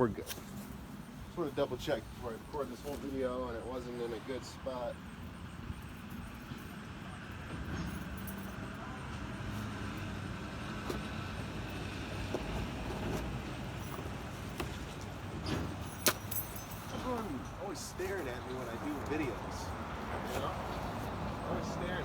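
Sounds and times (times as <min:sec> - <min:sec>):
vehicle engine running: 0:04.1 - 0:22.0.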